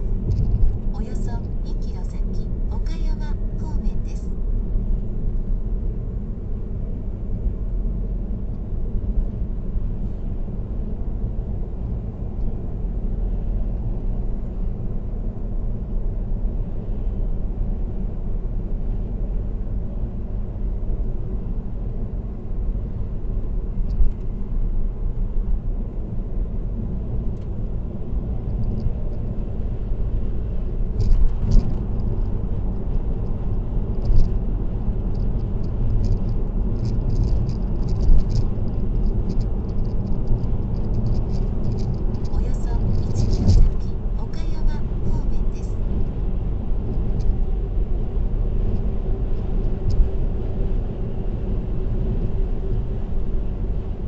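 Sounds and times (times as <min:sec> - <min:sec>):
car road and tyre noise: 0:00.0 - 0:54.0
light rattles: 0:35.1 - 0:43.9.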